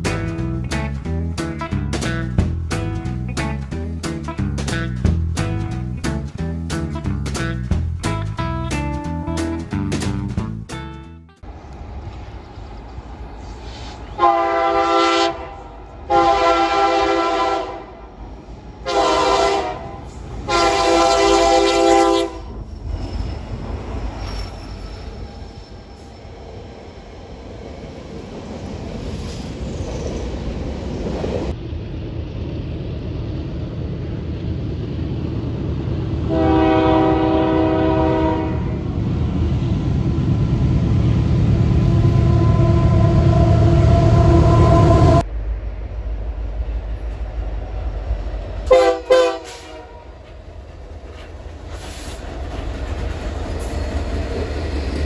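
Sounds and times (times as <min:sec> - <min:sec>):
low rumble of train: 0:00.0 - 0:55.0
locomotive air horn chord: 0:13.7 - 0:18.0, 0:18.8 - 0:22.5, 0:36.3 - 0:38.8, 0:42.0 - 0:45.2, 0:48.7 - 0:50.1.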